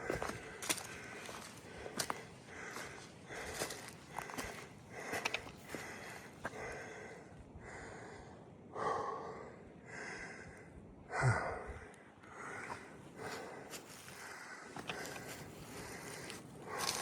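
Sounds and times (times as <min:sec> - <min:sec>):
footsteps: 0:00.0 - 0:06.2, 0:12.6 - 0:17.0
person breathing hard: 0:00.0 - 0:17.0.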